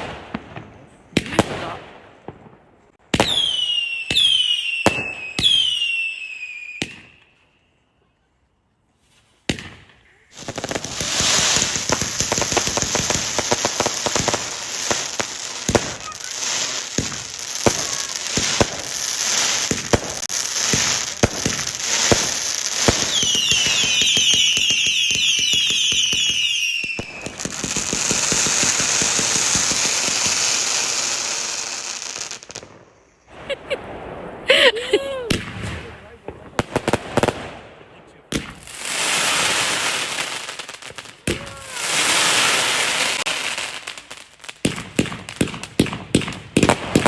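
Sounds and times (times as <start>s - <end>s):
fireworks crackling and banging: 0.0s - 7.4s, 9.0s - 47.0s
fireworks whistling: 3.1s - 7.7s, 9.2s - 37.6s, 38.3s - 47.0s
fireworks hissing spray: 10.4s - 25.3s, 27.1s - 32.6s.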